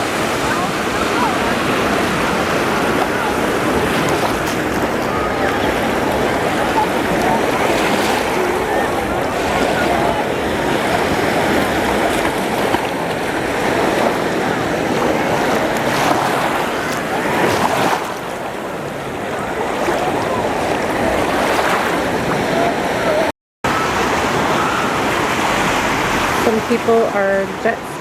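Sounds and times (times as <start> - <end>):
indistinct chatter: 0.0 - 28.0
waves washing onto sand: 0.0 - 28.0
wind on microphone: 0.0 - 28.0.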